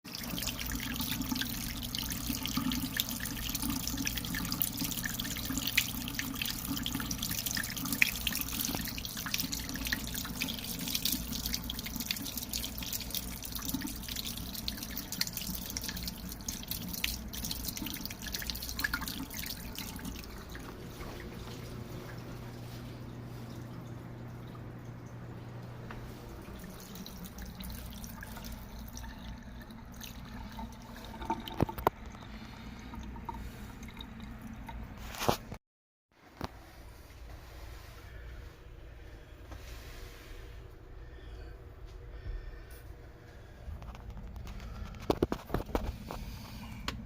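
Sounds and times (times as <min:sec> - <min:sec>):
water splashing into sink: 0:00.1 - 0:35.5.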